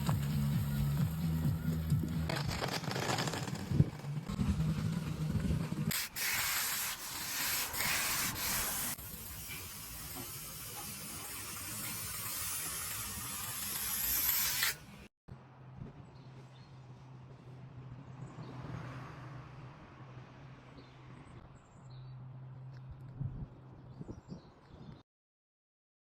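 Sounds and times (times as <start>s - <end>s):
scraping hiss of surfacing stone: 5.9s - 14.9s.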